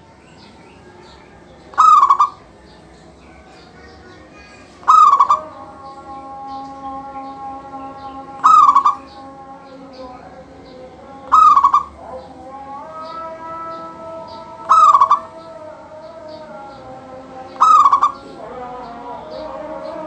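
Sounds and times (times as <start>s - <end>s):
zebra dove stuttering coo: 1.7s - 2.4s, 4.8s - 5.5s, 8.4s - 9.1s, 11.2s - 12.0s, 14.6s - 15.4s, 17.6s - 18.3s.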